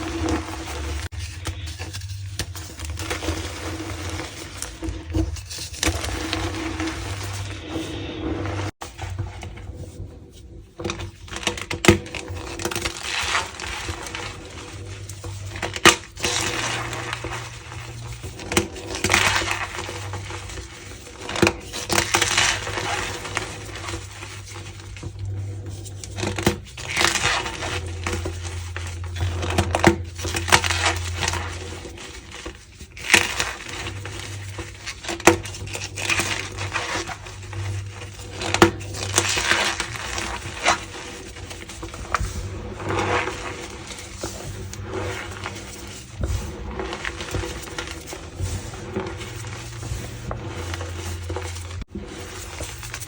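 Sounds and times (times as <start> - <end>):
chalk blocks crunching: 12.1 - 53.0.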